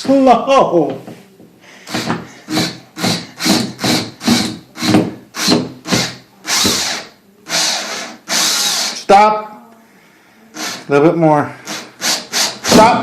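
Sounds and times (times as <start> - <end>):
power drill driving a screw: 1.9 - 9.0, 10.6 - 10.8, 11.7 - 12.9.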